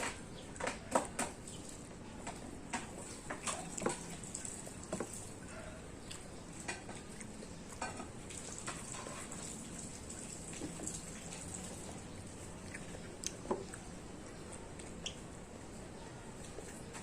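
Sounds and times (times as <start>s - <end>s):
person chewing: 2.9s - 15.8s
wet mouth clicks and smacks: 14.8s - 15.3s.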